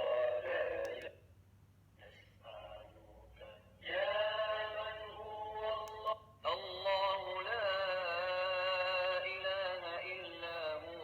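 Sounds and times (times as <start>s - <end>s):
man chanting through small speaker: 2.5s - 11.0s.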